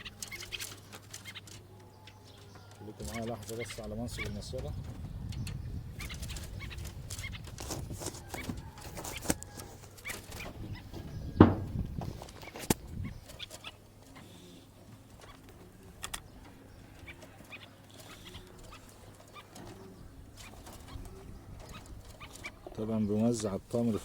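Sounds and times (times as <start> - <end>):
bird trap clicks and knocks: 7.2 - 9.7, 16.0 - 16.3.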